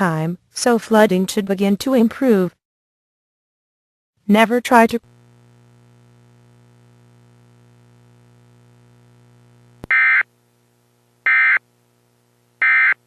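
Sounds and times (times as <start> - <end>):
steady low hum: 4.3 - 13.0.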